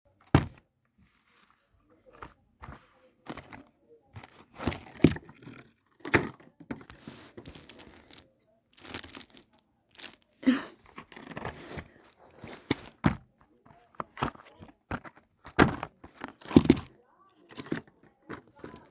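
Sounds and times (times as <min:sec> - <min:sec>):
box knocks and thuds: 0:00.2 - 0:00.6, 0:12.6 - 0:13.3, 0:14.1 - 0:16.9.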